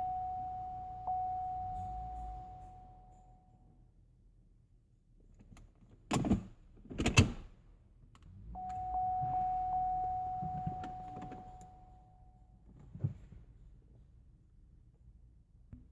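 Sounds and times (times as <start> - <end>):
clunks: 10.0 - 11.8.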